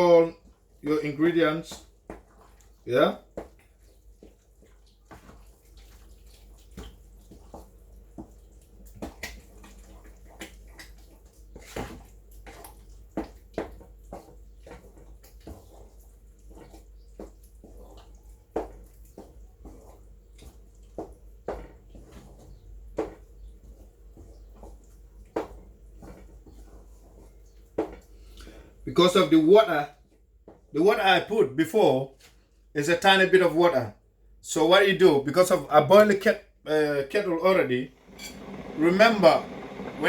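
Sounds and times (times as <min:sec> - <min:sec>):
low steady hum: 0:33.8 - 0:40.0
spoon stirring thick stew: 0:37.4 - 0:40.0.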